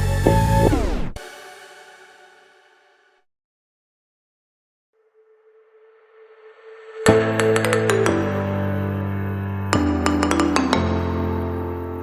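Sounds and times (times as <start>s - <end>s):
low synth chords: 0.0s - 3.1s.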